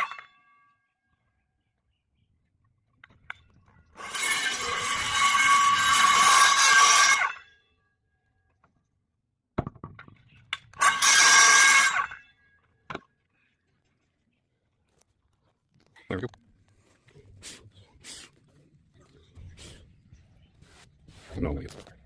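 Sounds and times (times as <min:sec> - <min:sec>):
power saw cutting plywood: 0:04.0 - 0:07.4, 0:10.8 - 0:12.2.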